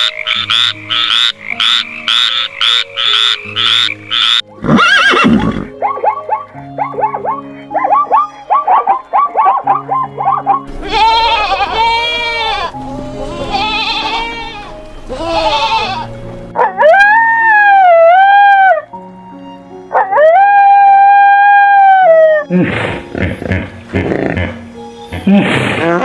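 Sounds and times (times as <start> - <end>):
animal calling: 0.0 - 18.8
background music: 0.0 - 26.0.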